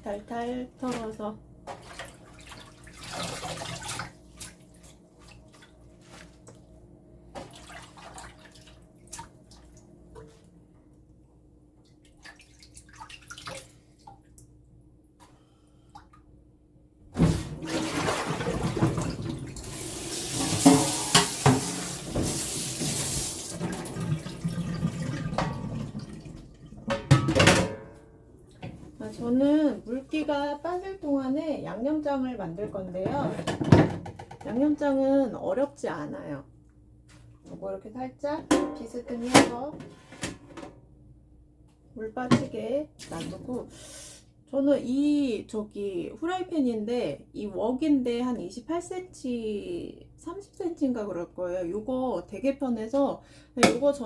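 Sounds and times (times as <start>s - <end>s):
low steady hum: 0.0s - 54.0s
tap water running into sink: 17.7s - 26.9s.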